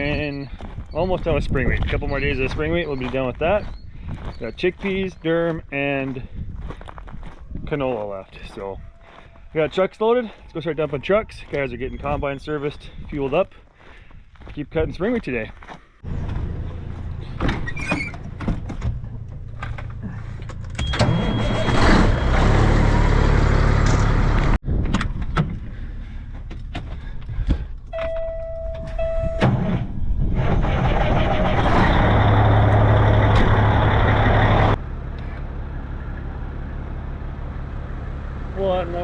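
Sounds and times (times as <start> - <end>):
truck diesel engine running: 19.0 - 24.6, 30.3 - 39.0.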